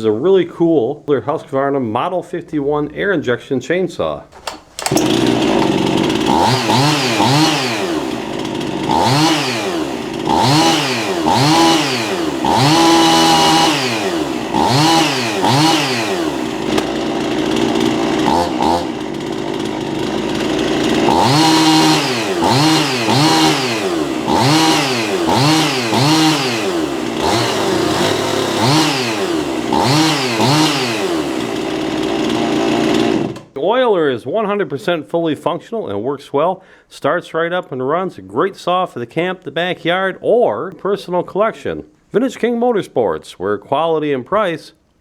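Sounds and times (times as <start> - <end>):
chainsaw revving: 4.4 - 33.5.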